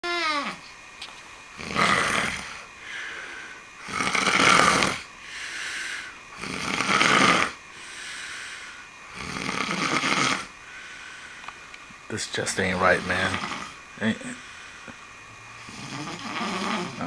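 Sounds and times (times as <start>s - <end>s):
man snoring loudly: 1.6s - 3.2s, 3.8s - 10.5s, 12.6s - 14.6s, 15.6s - 17.0s
quiet breaths: 2.4s - 4.1s, 4.7s - 7.0s, 7.7s - 9.6s, 10.6s - 11.8s, 12.4s - 17.0s.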